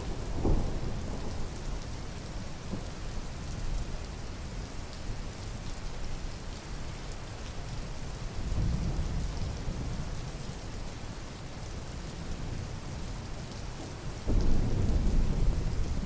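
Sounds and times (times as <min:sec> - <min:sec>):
steady rain falling: 0:00.0 - 0:16.0
thunder rumble: 0:14.3 - 0:16.0.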